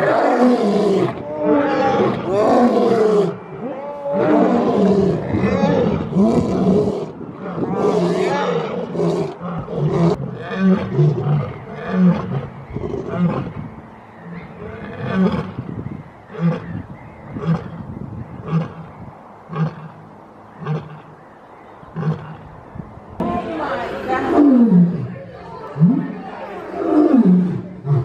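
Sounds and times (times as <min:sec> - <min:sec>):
lion roaring: 0:00.0 - 0:13.6, 0:14.2 - 0:15.6.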